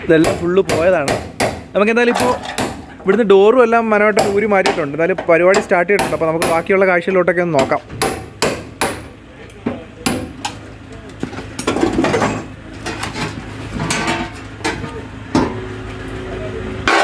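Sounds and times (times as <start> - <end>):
hammer striking metal: 0.2 - 2.8, 5.5 - 6.7, 7.6 - 9.1, 10.0 - 10.6
metal clatter: 11.2 - 15.6.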